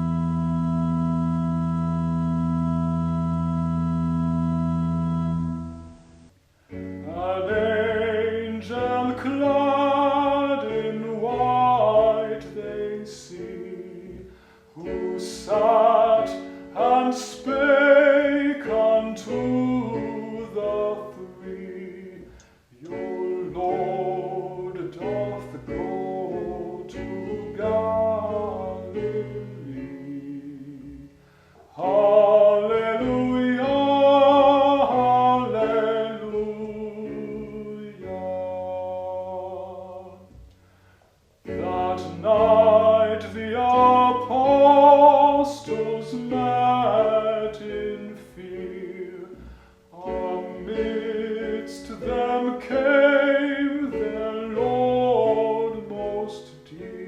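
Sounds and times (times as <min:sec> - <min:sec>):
person singing: 0:06.7 - 0:40.6, 0:41.4 - 0:57.0
acoustic guitar: 0:21.7 - 0:57.0.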